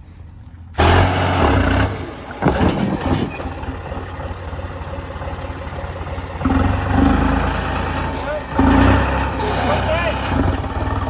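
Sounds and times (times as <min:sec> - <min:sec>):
tractor diesel engine running: 0:00.0 - 0:11.0.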